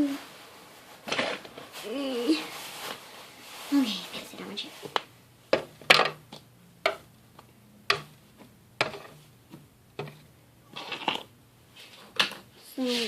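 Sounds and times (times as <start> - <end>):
small objects clicking and tapping: 5.0 - 8.1.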